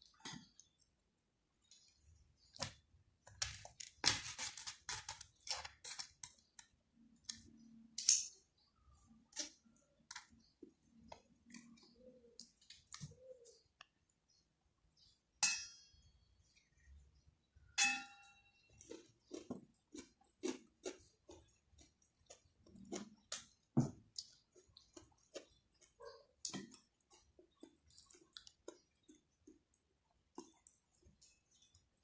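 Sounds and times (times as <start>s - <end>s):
wet chewing clicks: 8.8s - 13.0s, 18.8s - 32.0s
utensil clinking against bowl: 17.8s - 18.5s.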